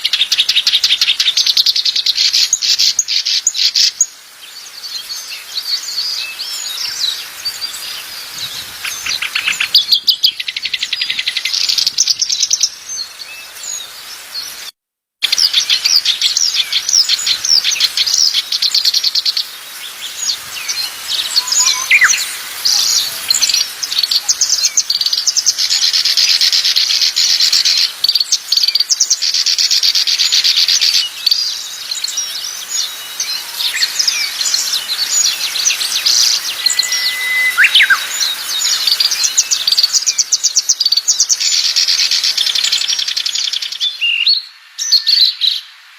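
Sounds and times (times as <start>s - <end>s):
songbirds trilling and twittering: 0.0s - 14.6s, 15.2s - 45.9s
clear whistled bird notes: 15.3s - 26.8s, 29.5s - 45.7s.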